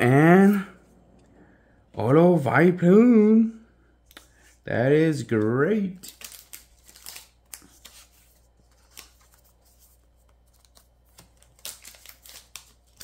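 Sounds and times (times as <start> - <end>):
cards clicking and rustling: 5.2 - 13.0.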